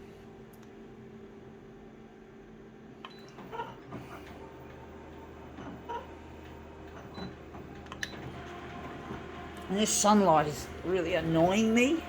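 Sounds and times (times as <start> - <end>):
photocopier low hum: 0.0 - 12.0.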